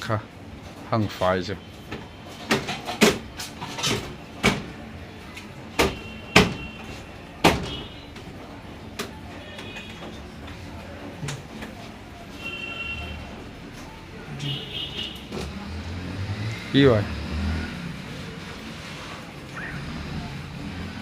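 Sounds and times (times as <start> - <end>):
hard objects knocking and clacking: 2.4 - 4.7.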